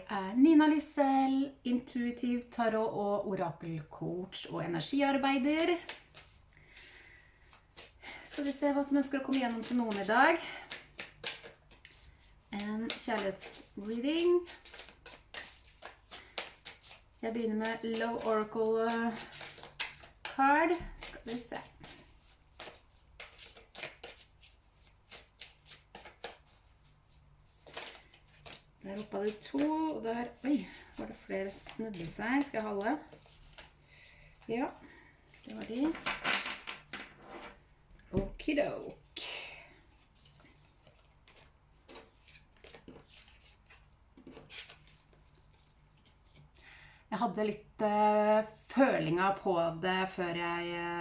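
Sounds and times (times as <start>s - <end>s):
cards being shuffled: 5.6s - 33.8s, 34.4s - 37.6s, 39.8s - 46.6s.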